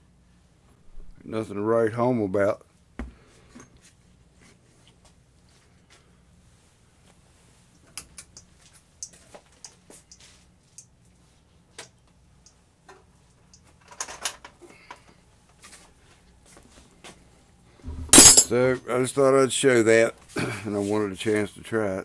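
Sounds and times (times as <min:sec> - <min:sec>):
objects clattering: 0:17.8 - 0:18.6.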